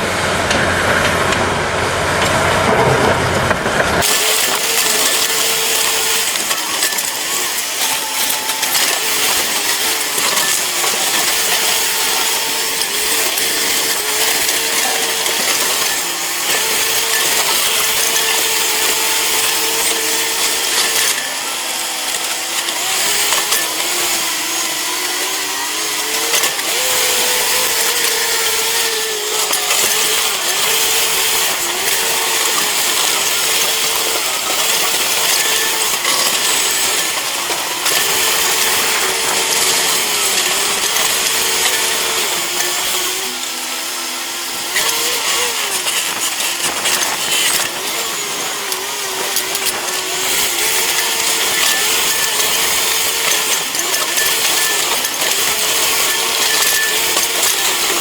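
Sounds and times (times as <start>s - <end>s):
heavy machine engine under load: 0.0s - 43.4s.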